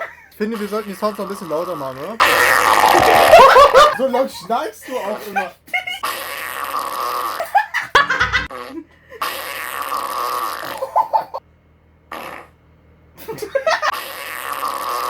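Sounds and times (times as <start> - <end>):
fart sound effects: 2.2 - 4.0, 6.0 - 7.4, 8.4 - 10.8, 12.1 - 12.6, 13.9 - 15.0
person giggling: 2.7 - 4.0.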